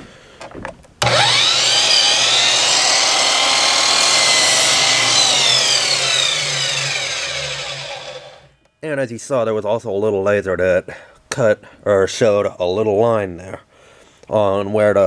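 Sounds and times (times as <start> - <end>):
miter saw motor whining: 1.0 - 8.6
saw cutting through board: 1.0 - 8.6.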